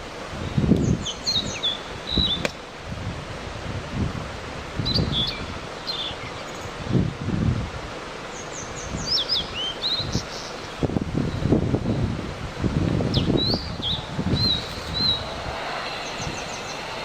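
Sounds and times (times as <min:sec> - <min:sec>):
low rustling noise: 0:11.7 - 0:17.0.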